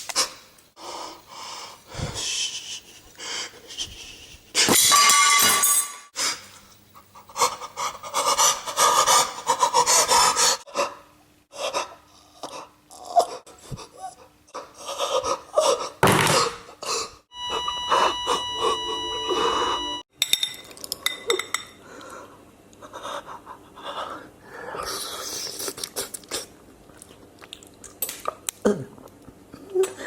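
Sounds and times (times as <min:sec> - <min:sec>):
man sobbing and panting: 0:01.9 - 0:04.7.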